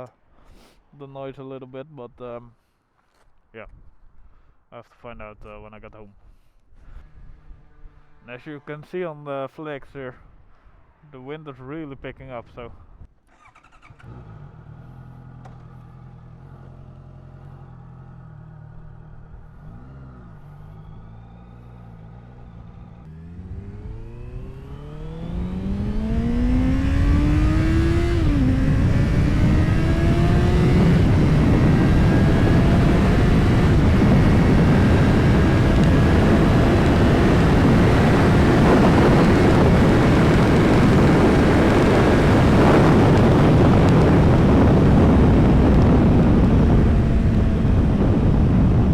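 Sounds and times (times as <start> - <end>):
motorcycle engine revving: 6.9 - 8.5, 13.3 - 48.9
wind rushing over microphone: 23.6 - 48.9.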